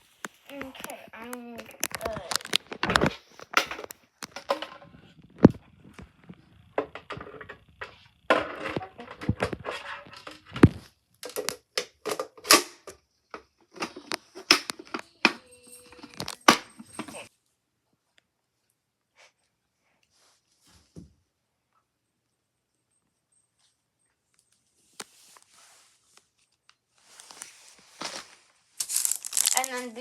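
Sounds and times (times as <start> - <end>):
packaging crinkling and tearing: 0.0 - 4.4, 27.1 - 30.0.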